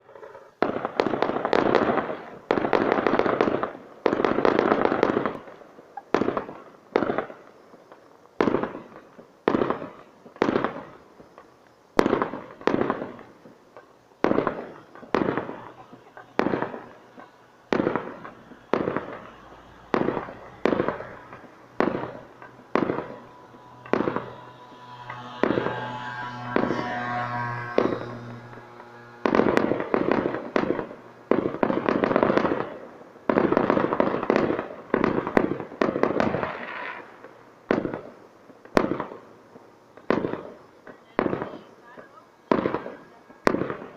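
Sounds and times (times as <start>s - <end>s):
fireworks bangs with echo: 0.0s - 43.9s
fireworks crackling: 0.0s - 43.9s
steady droning tone: 15.6s - 31.6s.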